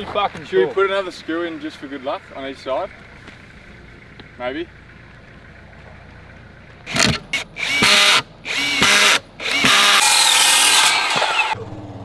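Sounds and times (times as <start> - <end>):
cordless drill whining: 6.9 - 11.6.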